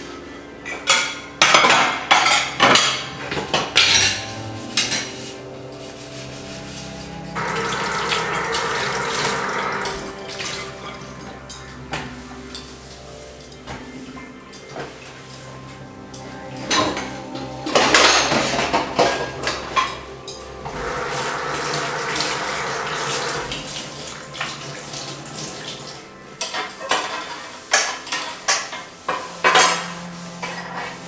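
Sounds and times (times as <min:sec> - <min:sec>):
dishes clattering and clinking: 0:00.0 - 0:31.0
tap running: 0:06.9 - 0:15.8, 0:20.6 - 0:30.7.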